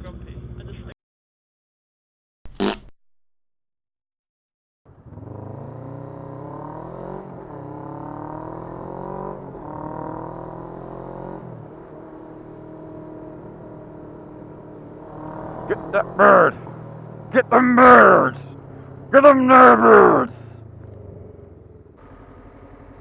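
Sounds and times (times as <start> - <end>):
motorcycle engine accelerating: 4.9 - 23.0.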